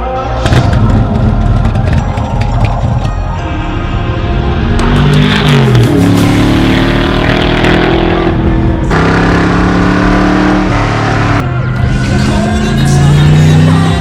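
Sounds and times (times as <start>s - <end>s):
car engine accelerating hard: 4.3s - 14.0s.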